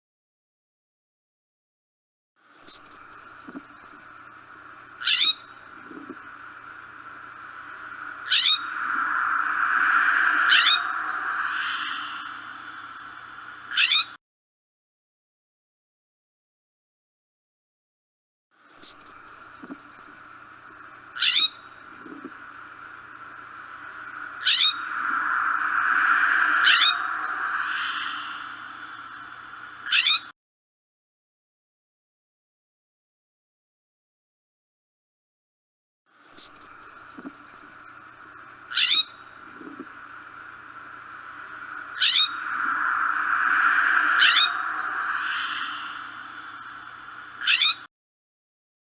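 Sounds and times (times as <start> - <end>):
steady background noise: 3.2 - 13.7, 19.1 - 29.9, 36.6 - 47.4
jay calling harsh rasps: 8.2 - 12.7, 24.4 - 25.2, 41.3 - 47.8.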